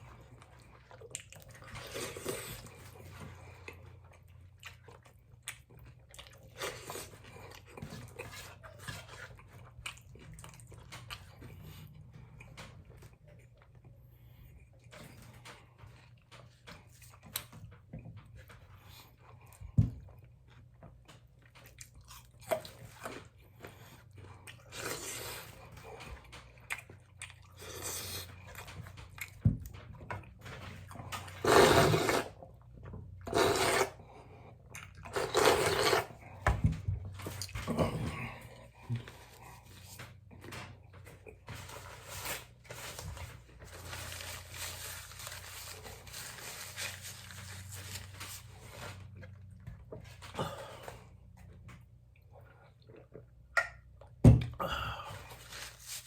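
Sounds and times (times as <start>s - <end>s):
clicks and knocks of eating: 0.0s - 31.4s, 34.4s - 46.6s.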